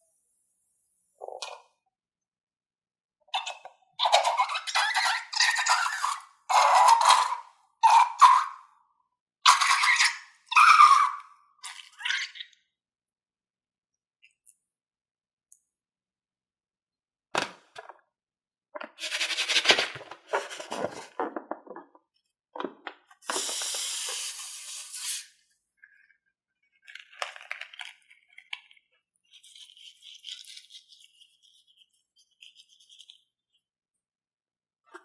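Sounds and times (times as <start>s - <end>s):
crackly squishing and rubbing: 26.7s - 33.2s.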